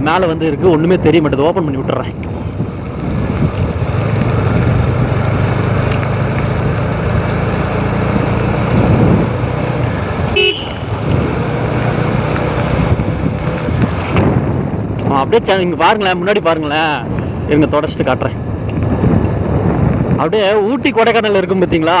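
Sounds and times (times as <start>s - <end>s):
traffic noise: 0.0s - 22.0s
wind noise: 0.0s - 22.0s
motorcycle engine running: 2.7s - 14.8s
vehicle horn toot: 10.4s - 11.0s.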